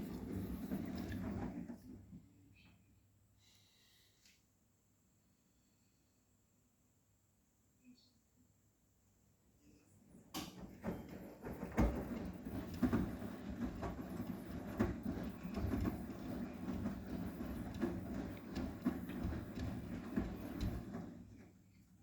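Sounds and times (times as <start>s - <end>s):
washing machine drum turning: 10.4s - 21.4s.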